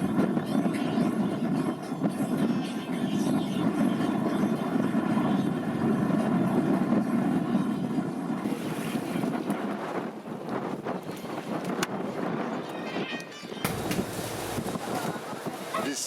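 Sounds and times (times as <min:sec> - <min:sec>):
boat engine droning: 0:13.7 - 0:16.0.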